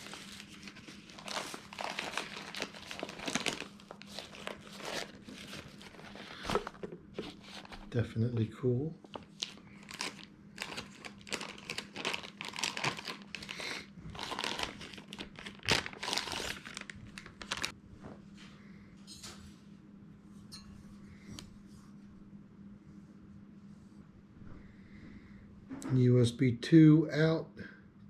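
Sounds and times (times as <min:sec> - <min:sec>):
plastic packaging crinkling: 0:00.0 - 0:08.0, 0:09.0 - 0:17.7.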